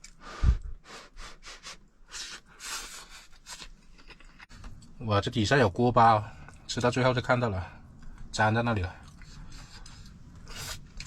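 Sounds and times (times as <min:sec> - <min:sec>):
soft scraping while eating: 0:02.1 - 0:04.9, 0:09.0 - 0:11.0.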